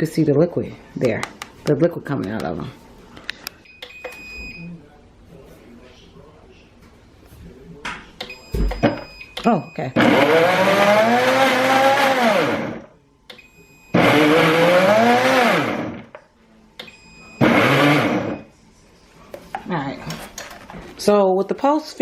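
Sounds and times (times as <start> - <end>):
blender motor whirring: 10.0 - 12.9, 14.0 - 16.1, 17.4 - 18.4.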